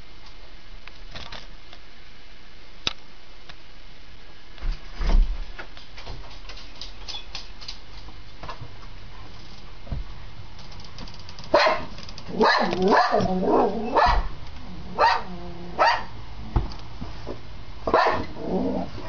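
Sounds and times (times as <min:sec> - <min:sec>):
dog barking: 0:11.5 - 0:14.3, 0:14.9 - 0:16.1, 0:17.9 - 0:18.4.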